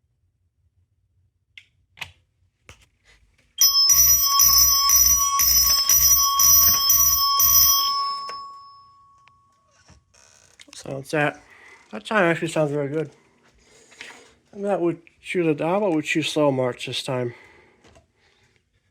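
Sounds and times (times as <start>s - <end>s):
fire alarm chime ringing: 3.6s - 9.6s.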